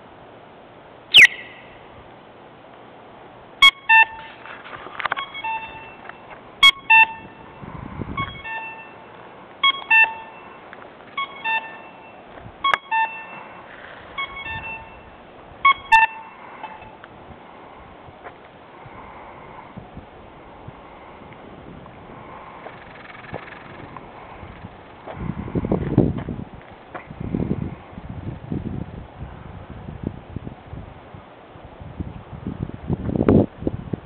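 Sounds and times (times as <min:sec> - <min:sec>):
crosswalk signal double beeps: 0:01.1 - 0:01.7, 0:03.6 - 0:04.4, 0:05.0 - 0:17.0.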